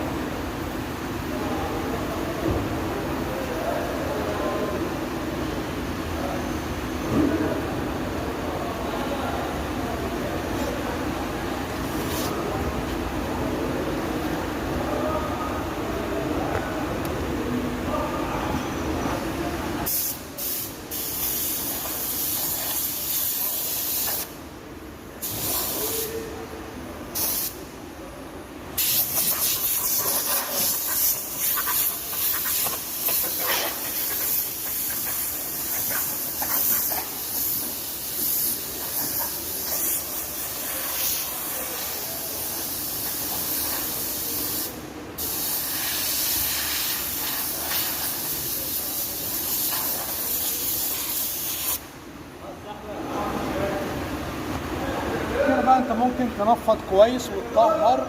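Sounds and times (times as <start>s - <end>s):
compressed air tools hissing: 28.8s - 51.8s.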